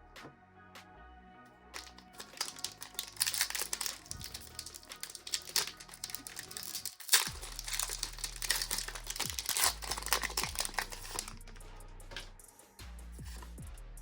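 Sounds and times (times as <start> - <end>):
foil wrapper crinkling and tearing: 1.8 - 11.6.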